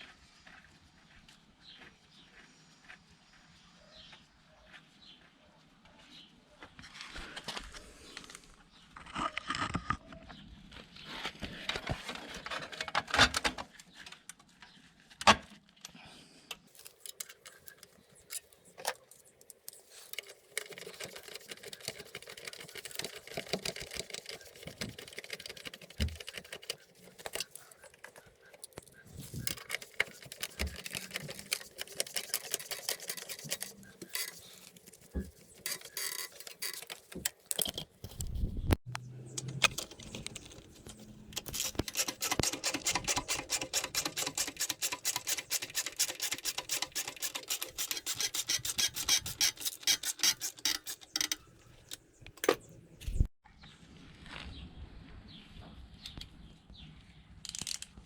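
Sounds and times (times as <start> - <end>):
metal tools clinking and rattling: 16.8 - 38.0, 39.3 - 53.2.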